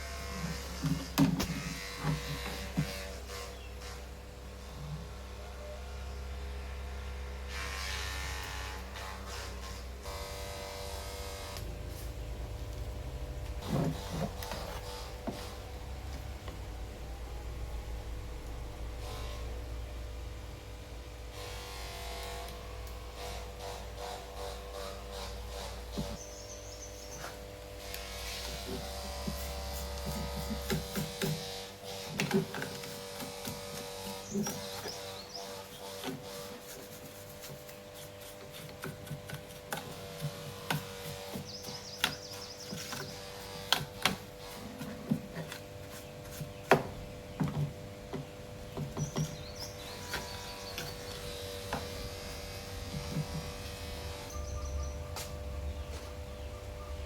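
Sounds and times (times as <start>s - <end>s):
low electrical hum: 0.0s - 57.0s
birds chirping: 26.0s - 27.6s, 33.4s - 36.1s, 40.9s - 43.8s, 44.8s - 52.2s, 52.9s - 57.0s.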